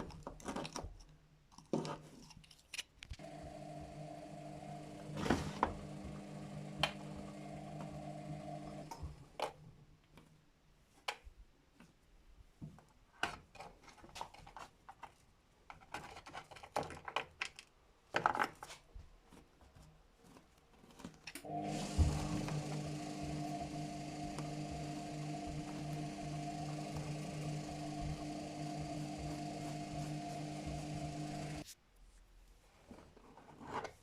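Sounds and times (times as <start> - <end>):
washing machine humming: 3.2 - 9.3, 21.4 - 31.6.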